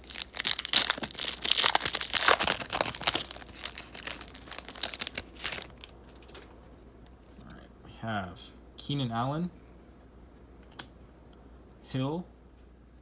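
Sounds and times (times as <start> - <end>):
foil wrapper tearing and crinkling: 0.0 - 6.3.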